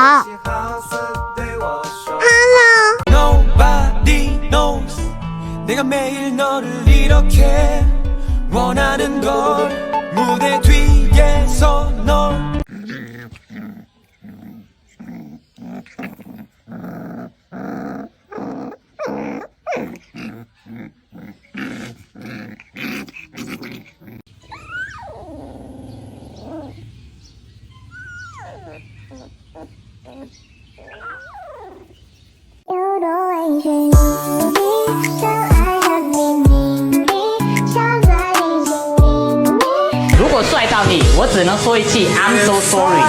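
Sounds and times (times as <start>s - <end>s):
puppy growling: 0.0s - 0.5s, 2.2s - 3.1s, 12.6s - 32.1s
puppy whining: 0.0s - 0.5s, 2.2s - 3.1s, 12.9s - 26.9s, 27.6s - 32.0s.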